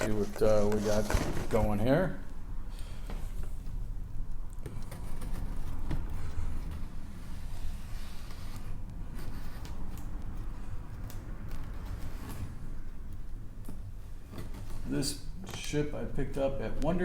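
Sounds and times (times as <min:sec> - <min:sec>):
cardboard box rustling: 0:00.0 - 0:01.8.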